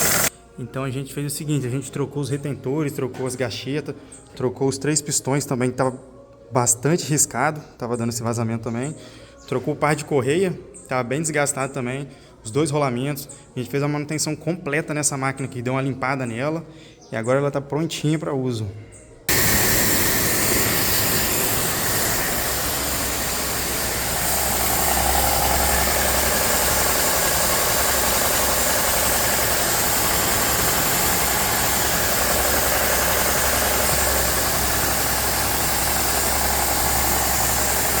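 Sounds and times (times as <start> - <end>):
pressure washer running: 0.0 - 0.3, 19.3 - 38.0.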